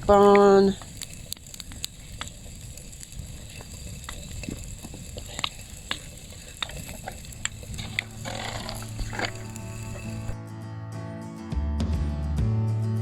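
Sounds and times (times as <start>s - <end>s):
soup sizzling in a pot: 0.0s - 10.4s.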